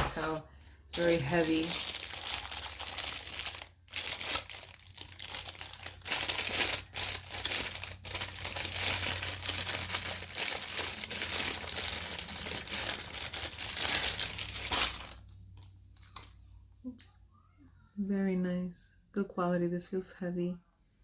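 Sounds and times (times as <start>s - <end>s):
packaging crinkling: 0.0s - 16.3s.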